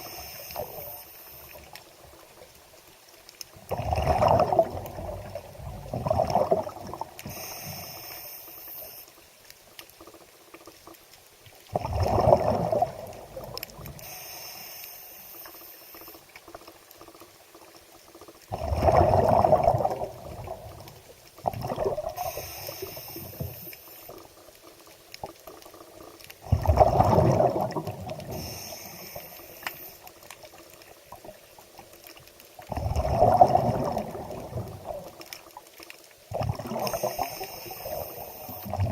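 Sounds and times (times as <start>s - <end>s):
water sloshing and gurgling: 0.0s - 14.2s, 15.4s - 38.9s
water trickling: 30.2s - 37.2s.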